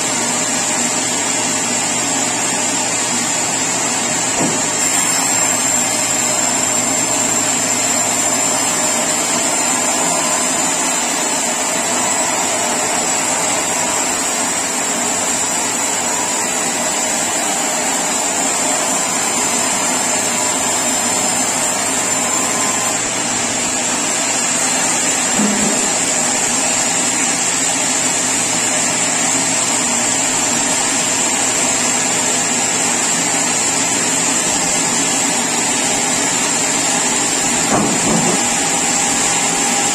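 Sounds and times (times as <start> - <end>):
sawmill saw whining: 0.0 - 39.9.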